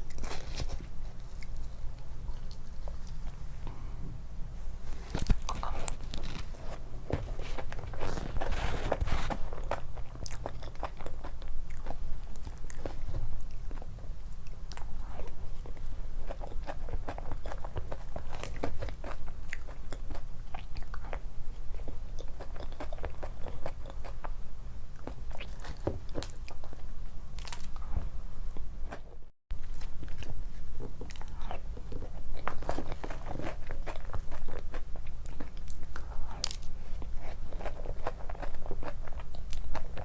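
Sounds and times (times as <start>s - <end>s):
person biting and chewing food: 5.0s - 13.9s, 28.9s - 40.0s.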